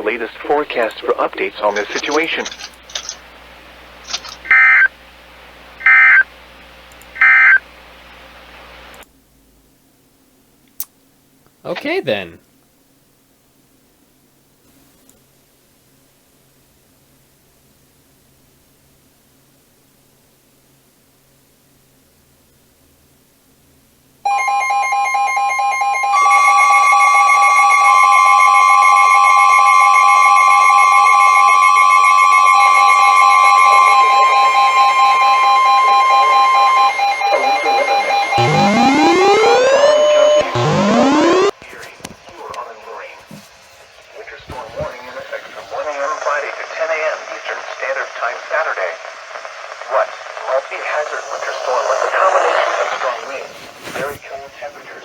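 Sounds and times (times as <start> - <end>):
steady radio hiss: 0.0 - 9.0, 11.7 - 12.4, 33.3 - 55.0
warbling two-pitch alarm: 24.3 - 41.5
shrill warbling data tones: 33.7 - 41.5.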